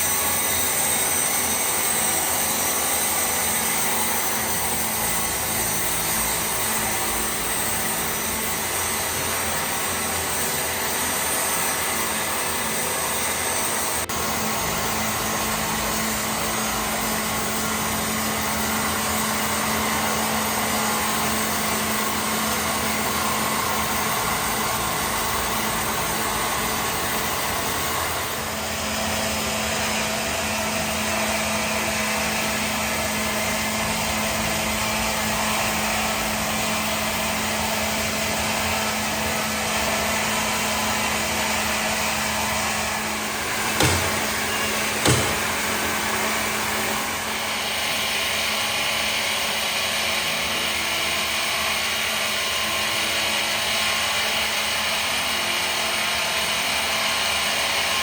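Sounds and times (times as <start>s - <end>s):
machine whirring drone: 0.0s - 35.4s, 39.6s - 48.0s
sharp knocks: 43.3s - 46.2s.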